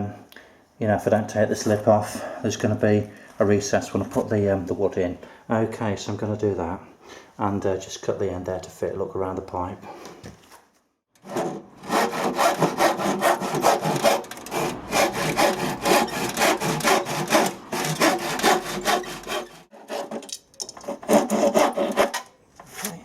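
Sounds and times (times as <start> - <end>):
hand saw cutting wood: 11.2 - 23.0.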